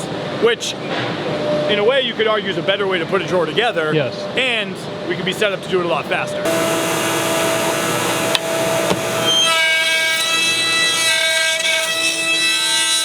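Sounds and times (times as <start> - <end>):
higher machine whine: 6.2 - 10.8
machine cutters whining: 6.4 - 13.0.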